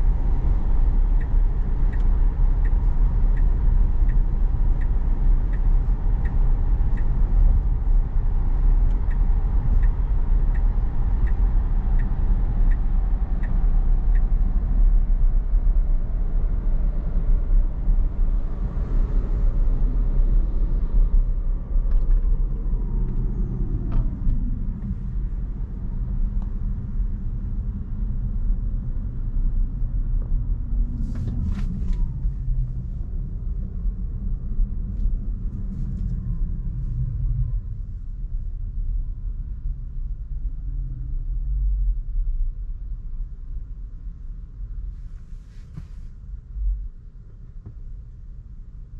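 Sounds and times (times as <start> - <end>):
turn signal ticking: 0.0 - 17.3
tyre and road rumble: 30.2 - 37.8.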